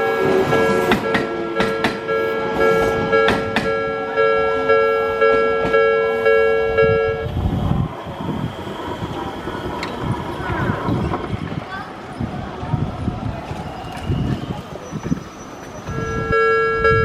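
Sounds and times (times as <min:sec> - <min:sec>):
level-crossing warning bell: 0:00.0 - 0:10.3, 0:15.5 - 0:17.0.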